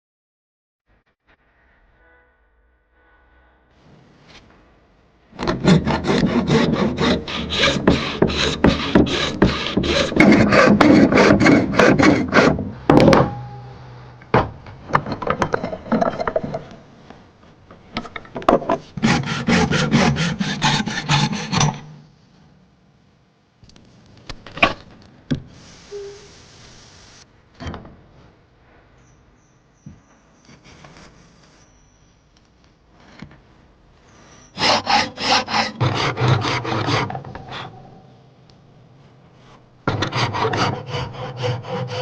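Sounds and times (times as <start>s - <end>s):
hand tool working wood: 5.4s - 13.5s, 18.0s - 21.9s, 34.6s - 37.8s, 39.9s - 42.0s.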